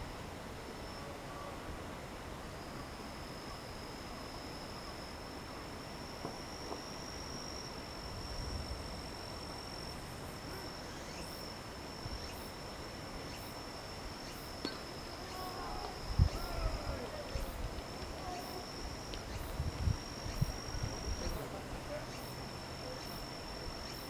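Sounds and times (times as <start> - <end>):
insect chirp: 0.0 - 24.0
insect high-pitched trill: 2.4 - 24.0.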